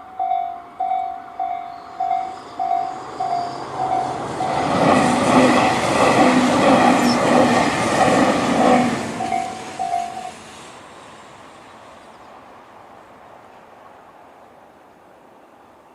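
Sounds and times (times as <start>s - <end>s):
level crossing warning bell: 0.0s - 4.8s, 9.2s - 10.4s
electric train passing: 0.0s - 15.9s.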